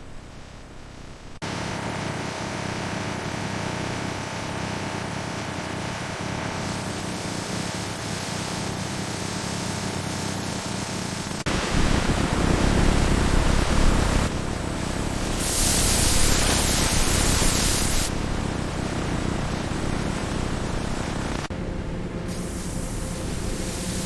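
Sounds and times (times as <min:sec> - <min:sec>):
machine hiss and rumble: 0:00.0 - 0:24.0
bright spraying hiss: 0:07.0 - 0:21.3, 0:22.3 - 0:24.0.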